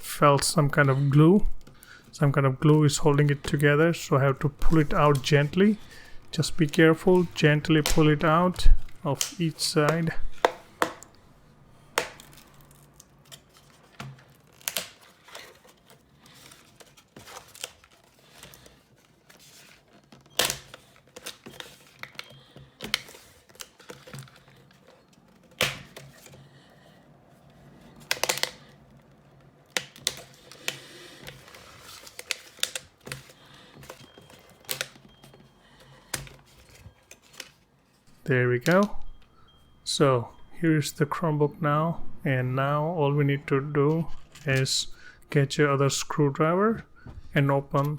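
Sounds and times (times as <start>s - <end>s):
plastic clips clicking and snapping: 7.2s - 11.2s, 28.1s - 28.8s.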